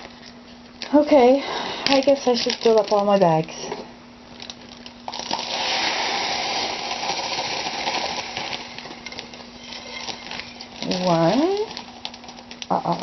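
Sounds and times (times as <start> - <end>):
pellets pouring into container: 4.4 - 12.9.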